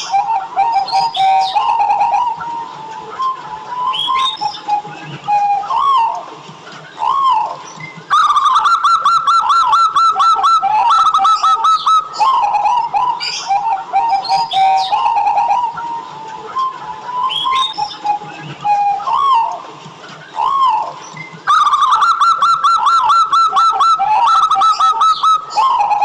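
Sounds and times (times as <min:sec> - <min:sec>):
high bird chirps: 0:00.0 - 0:02.7, 0:06.9 - 0:16.0, 0:17.2 - 0:19.5, 0:20.3 - 0:26.0
dove cooing: 0:00.0 - 0:19.6, 0:20.2 - 0:26.0.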